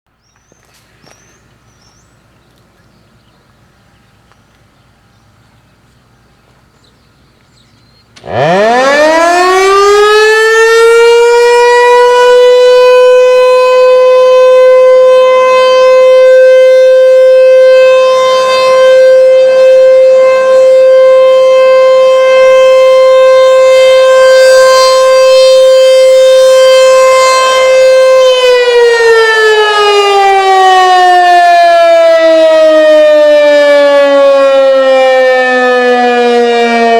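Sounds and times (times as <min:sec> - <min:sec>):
warning siren: 0:08.2 - 0:36.9.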